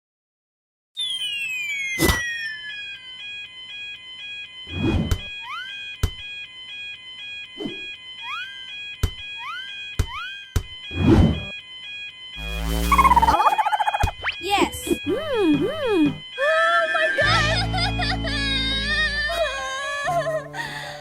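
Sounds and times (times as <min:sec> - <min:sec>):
cartoon falling glide: 0:01.0 - 0:03.0, 0:12.4 - 0:14.4
cartoon upward swoops: 0:12.4 - 0:14.4.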